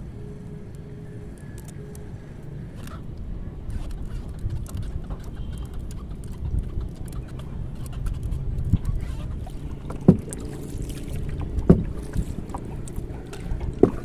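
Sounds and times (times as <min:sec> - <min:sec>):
water around boat hull: 0:00.0 - 0:14.0
wind: 0:00.0 - 0:14.0
hollow knocks on boat: 0:08.7 - 0:14.0.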